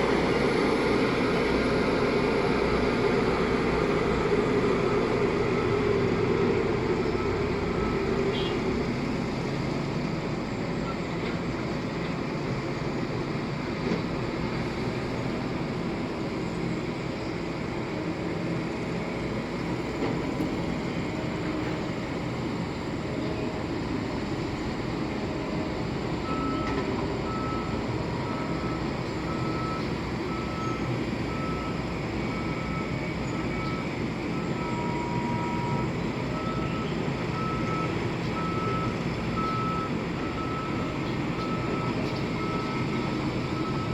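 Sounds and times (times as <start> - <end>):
reversing alarm beeping: 0.0 - 8.7, 26.2 - 43.9
diesel engine running: 0.0 - 43.9.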